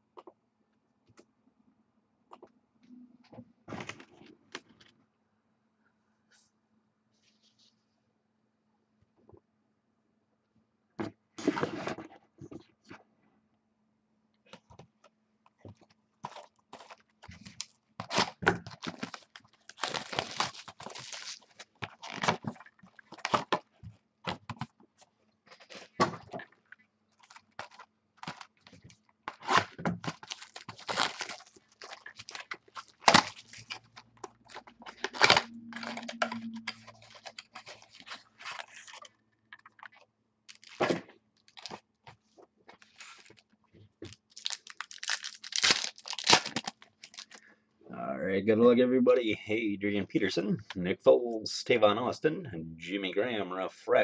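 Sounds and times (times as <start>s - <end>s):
plastic wrapping crinkling and tearing: 16.2s - 23.7s, 27.1s - 41.8s, 42.7s - 47.5s.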